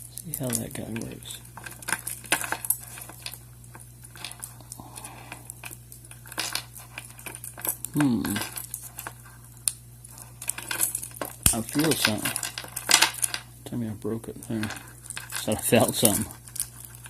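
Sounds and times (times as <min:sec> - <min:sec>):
low electrical hum: 0:00.0 - 0:17.0
person humming: 0:07.9 - 0:08.5.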